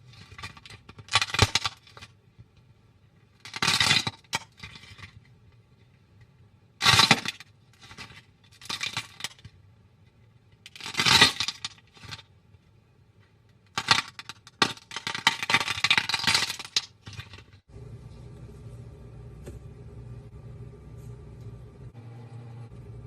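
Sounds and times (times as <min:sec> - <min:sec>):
slime crackling and popping: 0:13.8 - 0:17.4.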